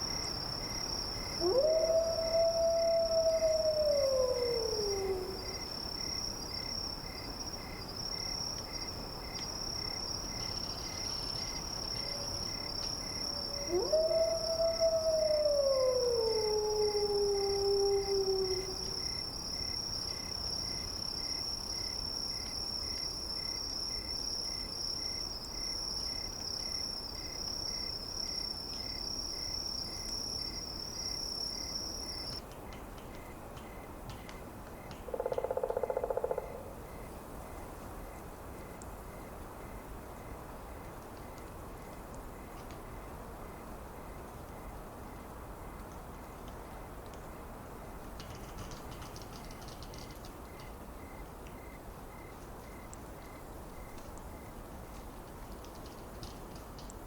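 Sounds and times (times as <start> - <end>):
pulsing insect chirp: 0.0 - 32.4, 34.8 - 37.6
crickets droning: 0.0 - 57.0
long canine howl: 1.4 - 5.6, 13.2 - 19.0.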